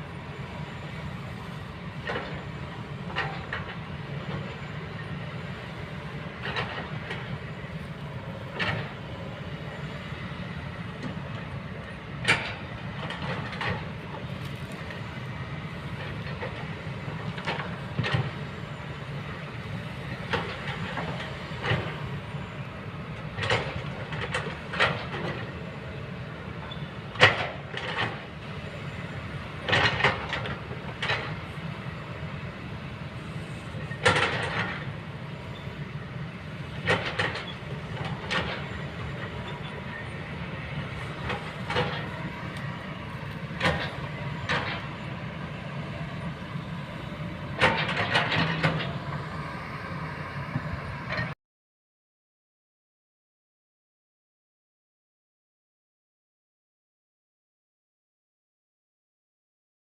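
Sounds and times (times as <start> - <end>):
excavator diesel engine humming: 0.0 - 51.4
metal clanks and scrapes: 47.6 - 49.1.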